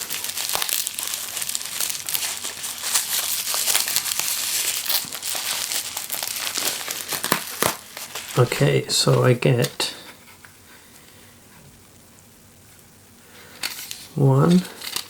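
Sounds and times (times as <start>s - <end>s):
packaging crinkling and rustling: 0.0s - 10.5s, 13.5s - 15.0s.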